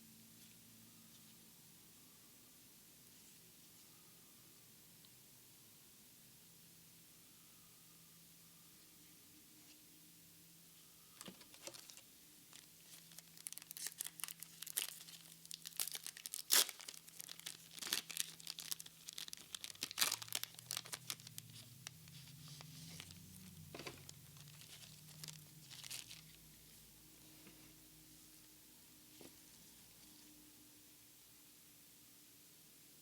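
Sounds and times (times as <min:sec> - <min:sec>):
foil wrapper tearing and crinkling: 0:11.5 - 0:26.4.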